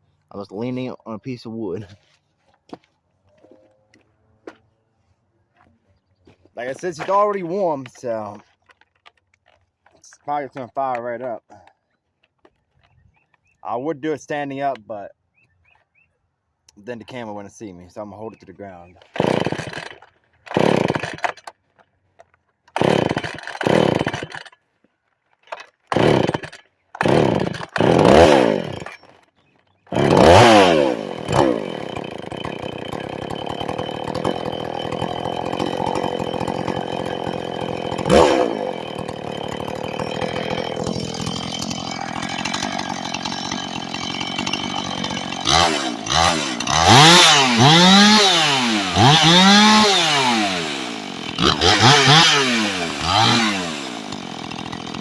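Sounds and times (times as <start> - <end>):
chainsaw starting and revving: 18.9 - 21.6, 22.7 - 24.6, 25.4 - 55.0.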